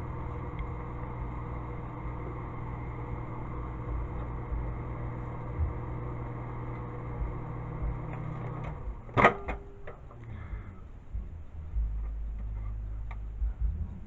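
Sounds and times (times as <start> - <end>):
microwave oven humming: 0.0 - 14.0
loud clunk: 8.6 - 10.0.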